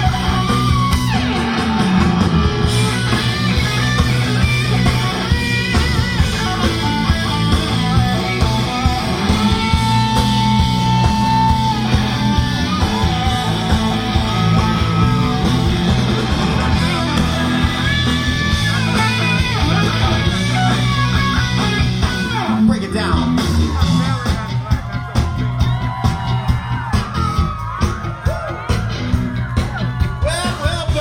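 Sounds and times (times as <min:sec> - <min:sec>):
electric guitar lead: 0:00.0 - 0:31.0
live rock band playing: 0:00.0 - 0:31.0.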